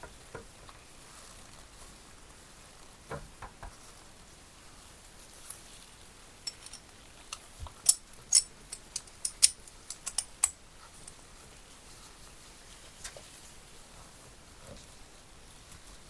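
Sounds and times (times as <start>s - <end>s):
clicks of small hard parts: 6.5s - 10.6s.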